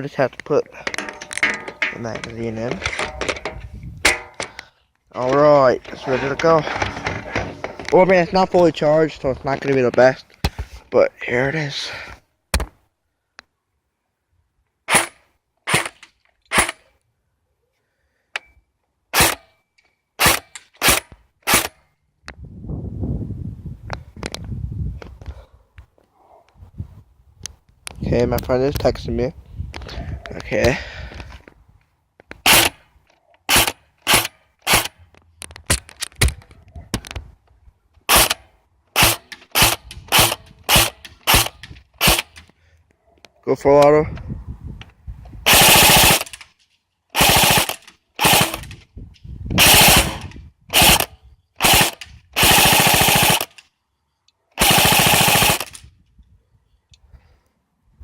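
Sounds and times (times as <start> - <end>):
airsoft gun shots: 32.5 - 32.8, 33.5 - 35.0, 39.0 - 42.4, 45.5 - 46.3, 47.2 - 48.7, 49.6 - 53.6, 54.6 - 55.8.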